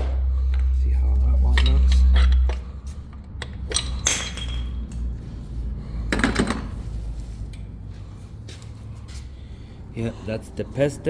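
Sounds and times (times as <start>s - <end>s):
parts rattling: 0.0s - 7.7s.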